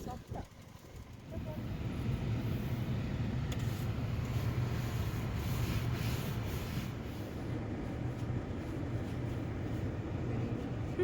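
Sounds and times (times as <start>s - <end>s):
car engine idling hum: 0.0s - 11.0s.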